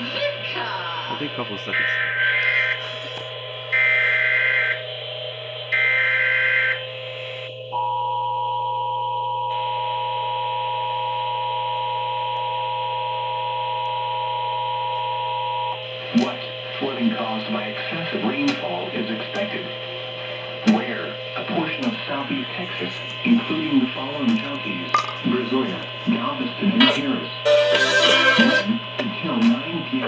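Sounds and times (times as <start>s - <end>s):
two-tone attention signal: 26.9s - 28.8s
warbling data tone bursts: 27.5s - 28.8s.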